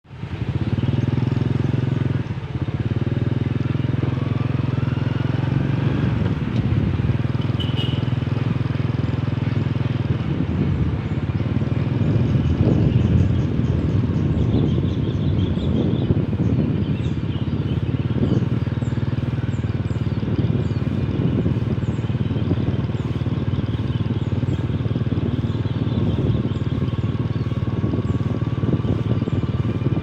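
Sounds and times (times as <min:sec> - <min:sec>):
vehicle engine rumbling: 0:00.1 - 0:30.0.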